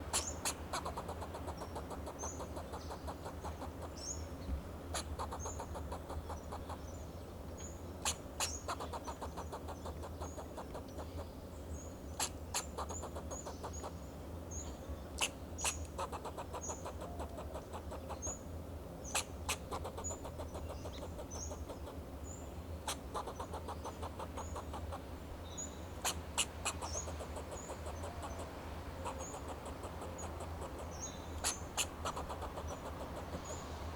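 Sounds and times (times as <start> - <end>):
squirrel alarm barks: 0.1 - 4.1, 4.9 - 6.8, 8.0 - 11.2, 12.2 - 14.0, 15.2 - 18.4, 19.1 - 22.0, 22.8 - 25.0, 26.0 - 33.6.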